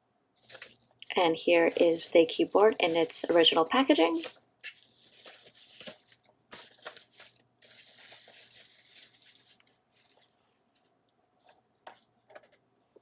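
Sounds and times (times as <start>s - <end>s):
packaging rustling and tearing: 0.4s - 12.3s.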